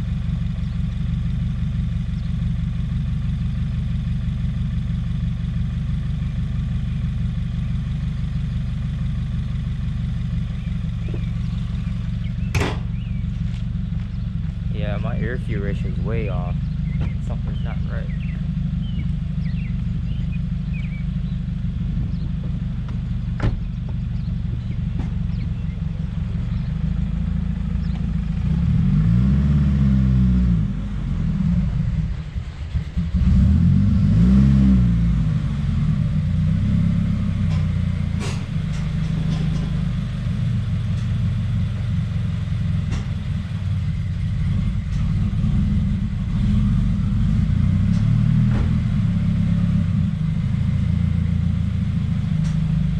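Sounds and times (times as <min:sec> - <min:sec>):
car engine revving: 0:10.1 - 0:52.9.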